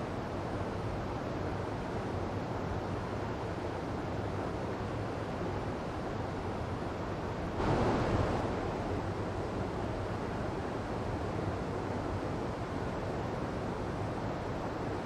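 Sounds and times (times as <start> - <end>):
waterfall rushing: 7.6 - 9.2.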